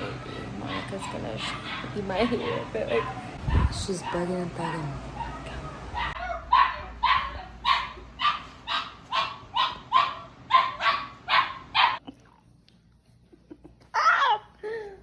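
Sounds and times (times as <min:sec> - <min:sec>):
puppy yipping: 0:05.2 - 0:12.0.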